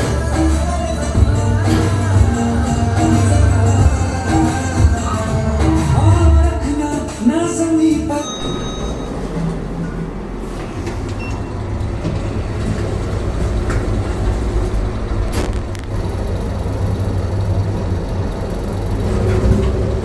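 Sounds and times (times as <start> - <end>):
vehicle interior rumble: 8.4 - 20.0.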